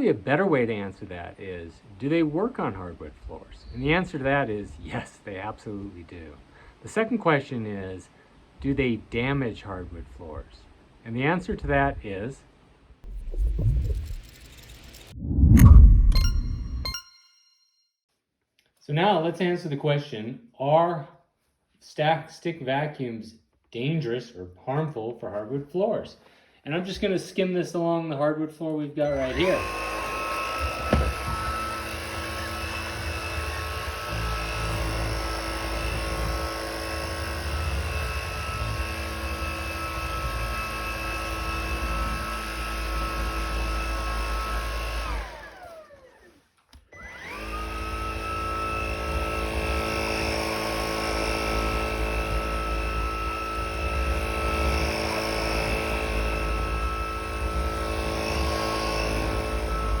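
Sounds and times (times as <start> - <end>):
stick vacuum motor whine: 29.0 - 46.3, 46.9 - 60.0.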